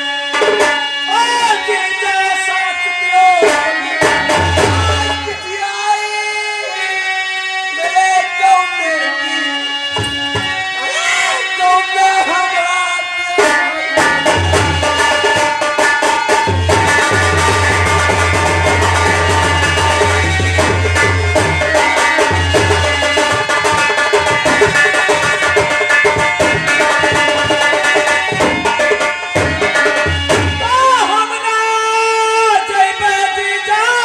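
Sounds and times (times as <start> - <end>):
bending folk melody: 0.0 - 31.5
fast hand drum playing: 3.4 - 5.4, 13.4 - 31.1.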